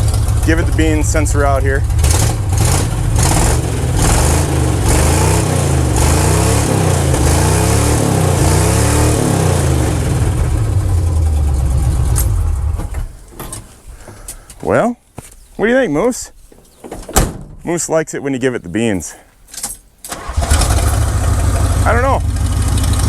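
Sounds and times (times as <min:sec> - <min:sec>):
pickup truck engine revving: 0:00.0 - 0:13.3, 0:20.2 - 0:23.0.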